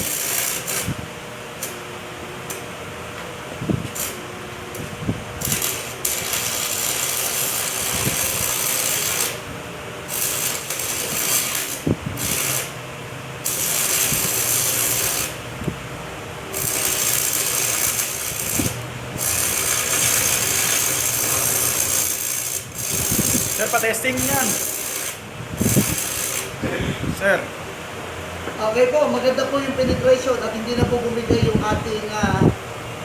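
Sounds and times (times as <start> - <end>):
welding arc crackling: 0.0 - 1.8, 3.8 - 26.6.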